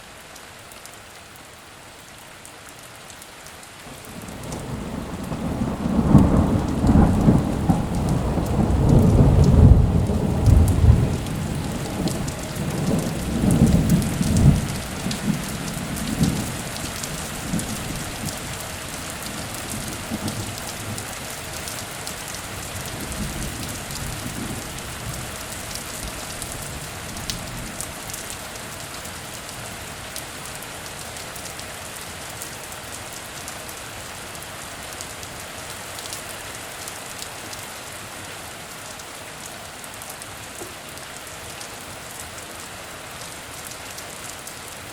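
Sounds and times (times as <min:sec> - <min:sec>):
heavy rain hissing: 0:03.8 - 0:44.9
rolling thunder rumble: 0:04.2 - 0:18.6.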